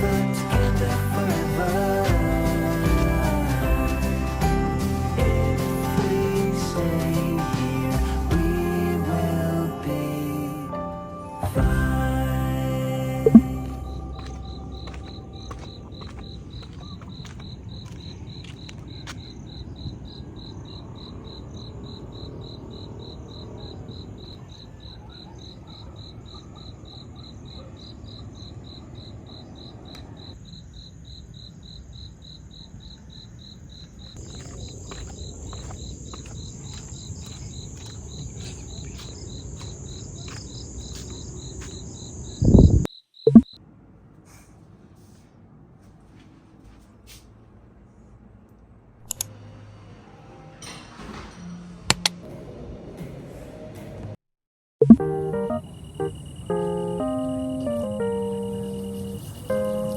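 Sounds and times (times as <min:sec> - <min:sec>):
insects chirping: 0:13.3 - 0:43.6, 0:55.0 - 0:59.9
high insect drone: 0:13.5 - 0:24.6, 0:28.1 - 0:43.5, 0:55.4 - 0:59.9.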